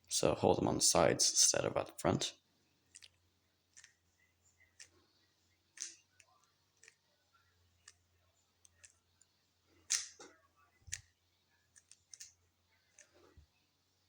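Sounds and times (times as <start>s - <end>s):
puzzle cube plastic clicks: 5.7s - 7.0s, 9.9s - 10.3s.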